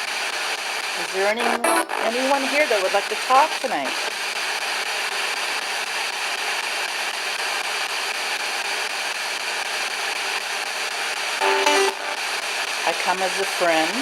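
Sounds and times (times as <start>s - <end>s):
radio static hiss: 0.0s - 5.5s, 11.3s - 14.0s.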